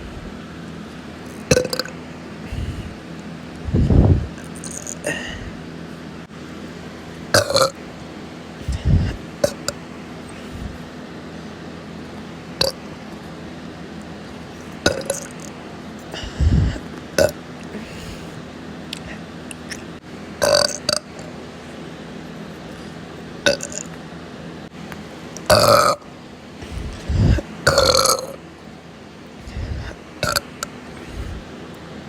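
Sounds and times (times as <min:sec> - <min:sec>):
steady low hum: 0:00.0 - 0:32.0
person burping: 0:01.5 - 0:02.0, 0:04.5 - 0:05.6, 0:07.3 - 0:07.8, 0:12.6 - 0:12.8, 0:14.9 - 0:15.5, 0:16.1 - 0:17.4, 0:20.4 - 0:21.2, 0:23.5 - 0:23.9, 0:25.5 - 0:26.0, 0:26.9 - 0:28.4, 0:29.7 - 0:30.6.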